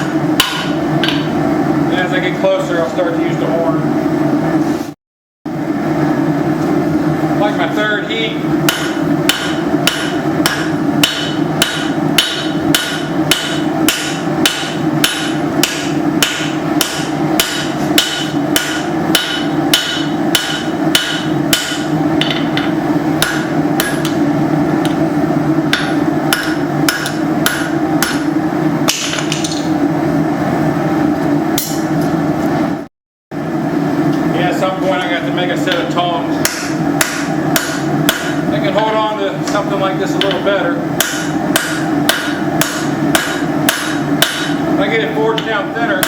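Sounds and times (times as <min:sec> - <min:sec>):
hammer striking steel on anvil: 0:00.4 - 0:01.4, 0:08.7 - 0:24.2, 0:25.7 - 0:28.3, 0:28.9 - 0:29.8, 0:31.6 - 0:31.9, 0:36.4 - 0:38.4, 0:41.0 - 0:44.6.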